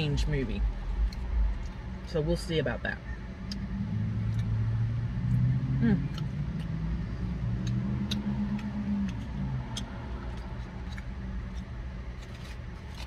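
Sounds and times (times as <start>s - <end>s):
car engine humming: 0.0s - 13.0s
chewing clicks: 3.4s - 4.6s, 6.1s - 6.8s, 7.5s - 13.0s.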